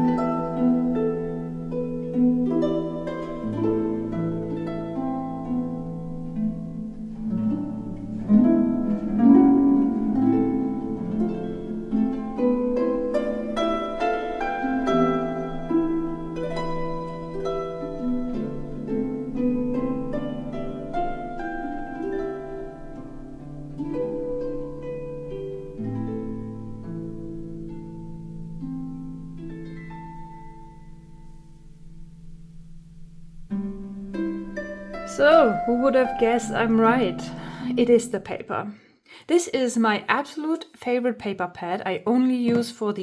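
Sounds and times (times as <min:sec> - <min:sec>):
instrumental background music: 0:00.0 - 0:38.3.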